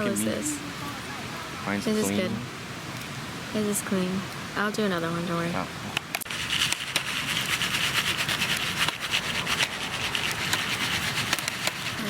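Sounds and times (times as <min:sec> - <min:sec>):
campfire crackling and popping: 0:05.9 - 0:12.0.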